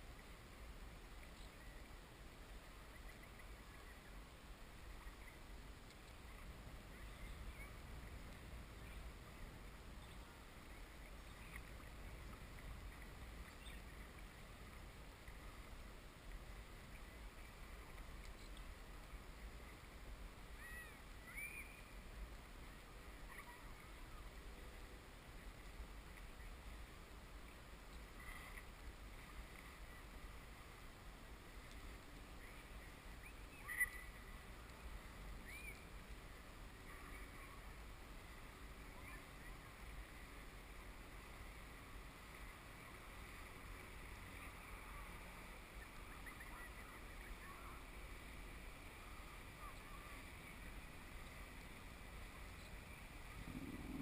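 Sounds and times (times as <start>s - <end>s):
faint bird chirps: 6.1s - 7.9s, 9.9s - 12.2s, 12.9s - 14.4s, 20.5s - 22.0s, 23.2s - 24.7s, 32.4s - 34.5s, 35.4s - 36.0s, 38.8s - 39.8s, 45.7s - 47.9s
steady low rumble: 39.7s - 54.0s.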